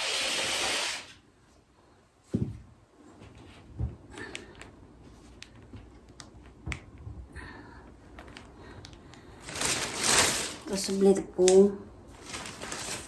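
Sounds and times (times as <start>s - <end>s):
packaging rustling: 9.4s - 13.0s.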